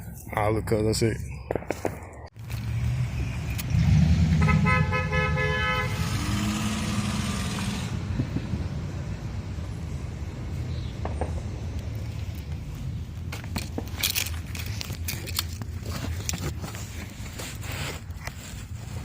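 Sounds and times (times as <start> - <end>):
traffic noise: 0.0 - 19.0
vehicle engine rumbling: 0.0 - 19.0
car horn blast: 4.3 - 6.2.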